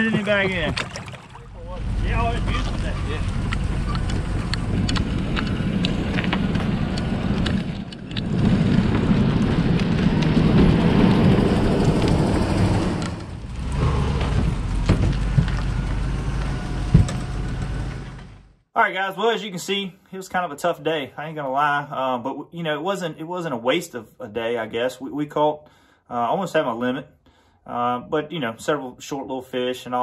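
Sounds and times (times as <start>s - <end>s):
wind buffeting microphone: 0.0s - 17.6s.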